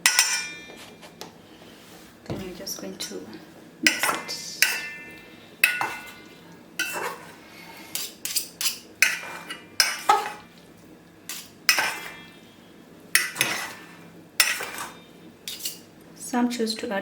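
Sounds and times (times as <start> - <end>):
utensil clinking against bowl: 0.0 - 0.8, 3.8 - 7.2, 8.0 - 10.5, 11.3 - 12.4, 13.2 - 15.8.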